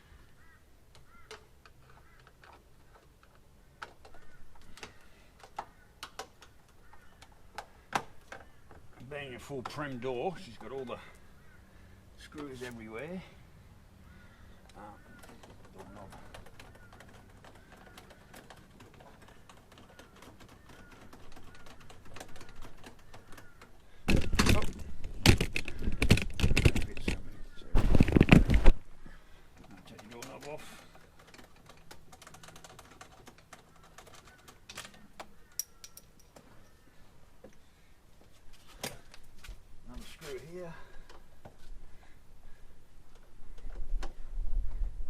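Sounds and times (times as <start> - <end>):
hand tools clicking on screws: 29.6 - 36.5
bird chirping: 33.6 - 37.2.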